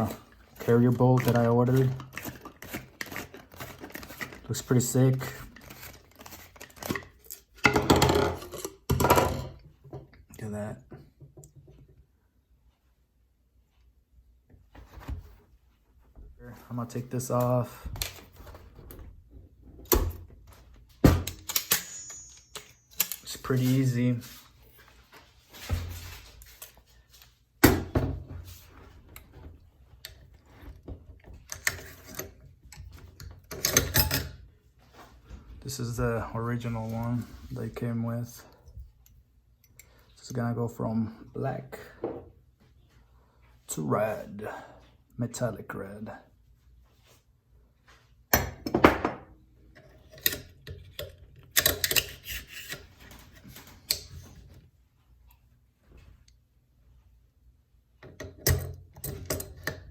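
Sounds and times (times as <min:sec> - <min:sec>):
metal parts clinking: 0:21.2 - 0:23.6
metal clicks of rifle parts: 0:21.3 - 0:23.4, 0:50.1 - 0:52.8.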